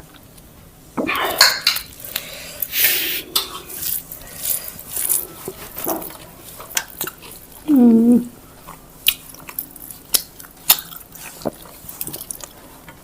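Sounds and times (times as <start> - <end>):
dishes clinking and scraping: 1.0 - 2.0, 3.3 - 6.2.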